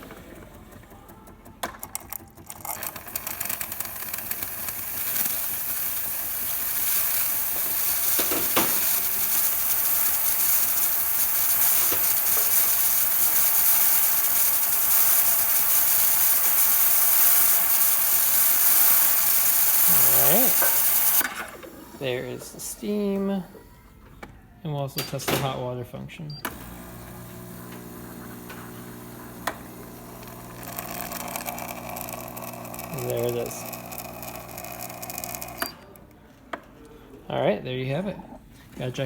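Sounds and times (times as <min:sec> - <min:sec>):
steam wand hissing: 0:04.2 - 0:23.0.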